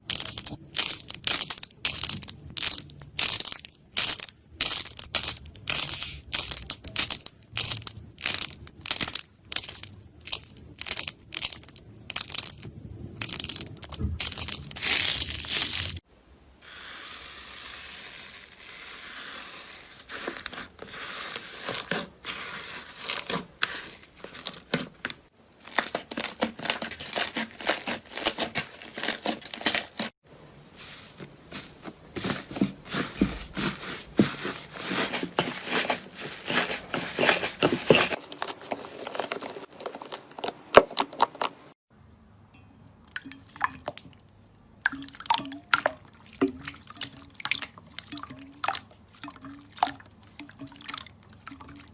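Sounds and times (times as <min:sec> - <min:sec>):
slime crackling and popping: 0:00.0 - 0:16.0
steady hiss: 0:16.1 - 0:20.2.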